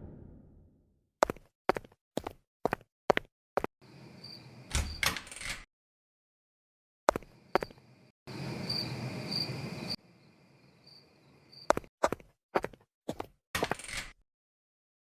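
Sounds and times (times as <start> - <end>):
cricket chirping: 3.8 - 5.0, 7.4 - 11.8.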